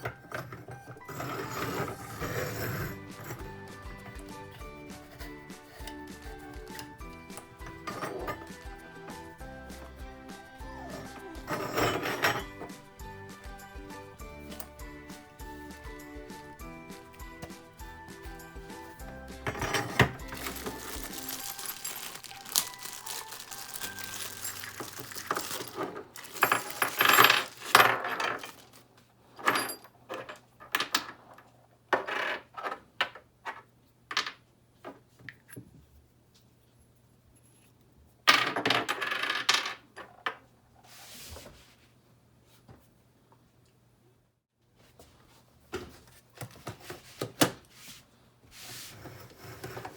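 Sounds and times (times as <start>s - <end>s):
metal parts clinking together: 19.5s - 28.7s
packaging rustling: 19.6s - 28.9s.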